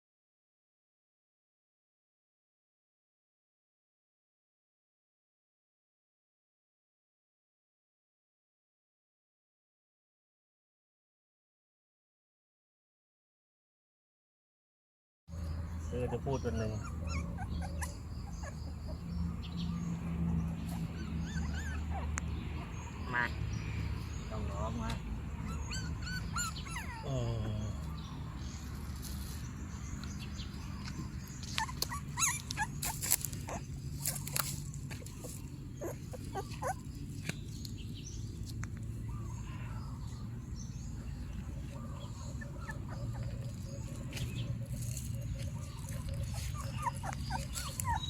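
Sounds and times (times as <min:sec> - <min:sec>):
dogs whimpering: 0:15.8 - 0:24.3, 0:25.2 - 0:28.6, 0:30.3 - 0:37.2, 0:40.9 - 0:48.0
clicks and rustles: 0:30.8 - 0:35.5.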